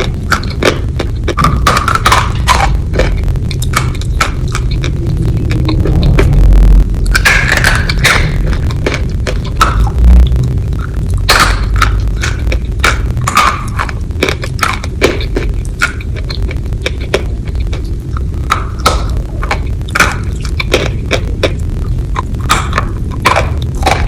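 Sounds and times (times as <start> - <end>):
close chewing: 0.0 - 6.4, 7.0 - 24.0
low rumble: 0.0 - 24.0
steady low hum: 0.0 - 24.0
heavy low thump: 4.9 - 11.1.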